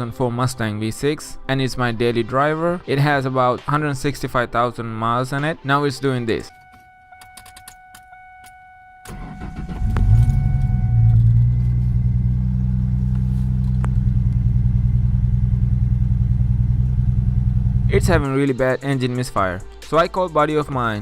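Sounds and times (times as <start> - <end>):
clicks: 6.5 - 11.8, 13.1 - 14.5
car engine cranking and starting: 6.6 - 18.3
misfiring engine idling: 9.1 - 18.2.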